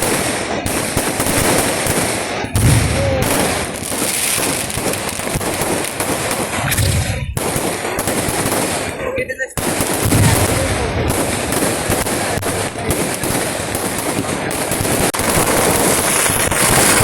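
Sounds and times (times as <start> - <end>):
firecrackers crackling: 0.0 - 17.0
heavy firework booms: 0.0 - 17.0.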